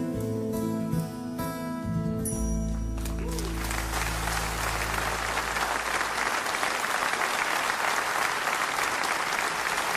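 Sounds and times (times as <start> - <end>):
audience applauding: 3.0 - 9.9.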